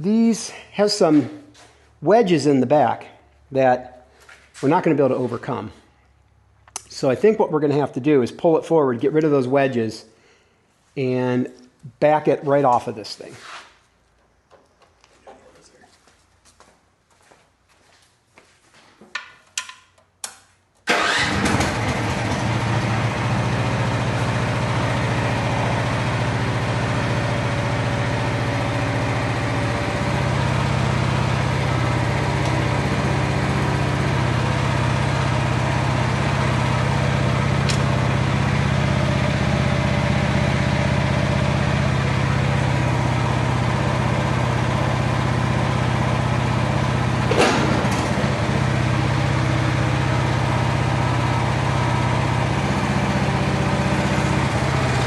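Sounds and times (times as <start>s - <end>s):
small petrol engine running: 20.9s - 55.0s.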